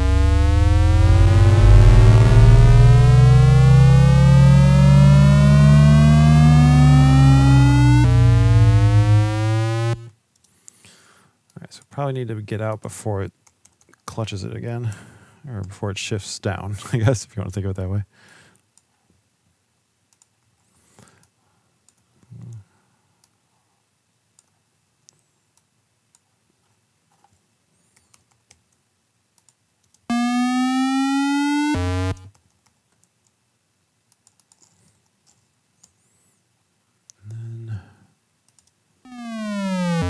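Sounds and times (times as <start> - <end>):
synthesized race car acceleration: 0.0 - 10.1, 30.1 - 32.3, 39.1 - 40.0.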